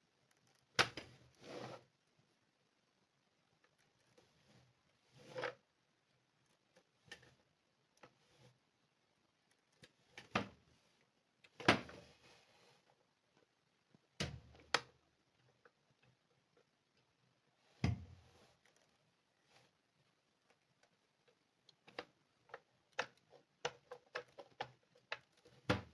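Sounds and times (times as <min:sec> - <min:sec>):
knocks and clicks of objects handled: 0:20.5 - 0:25.9.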